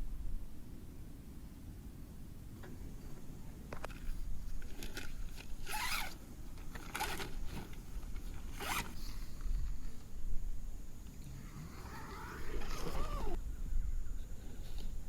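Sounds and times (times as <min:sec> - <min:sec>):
zipper being pulled: 0:05.6 - 0:06.2, 0:08.5 - 0:09.3, 0:11.2 - 0:13.4.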